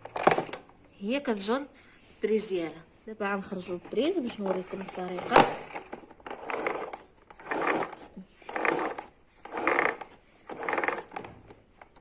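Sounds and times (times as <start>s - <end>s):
cord reel rattling: 0.0s - 0.8s, 3.8s - 12.0s
power cord pulled from reel: 5.2s - 11.6s.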